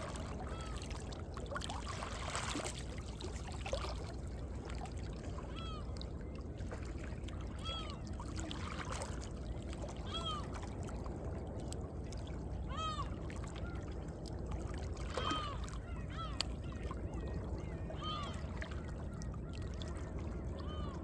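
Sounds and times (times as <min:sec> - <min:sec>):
bird crying: 0:00.5 - 0:00.8, 0:05.5 - 0:05.9, 0:07.6 - 0:08.0, 0:10.0 - 0:10.5, 0:12.7 - 0:13.1, 0:15.1 - 0:16.4, 0:17.6 - 0:18.5.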